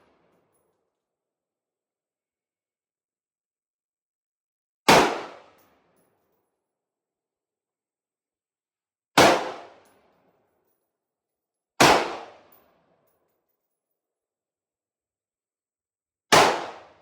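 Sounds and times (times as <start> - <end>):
rifle shots with echo: 4.9 - 5.5, 9.2 - 9.8, 11.8 - 12.4, 16.3 - 17.0.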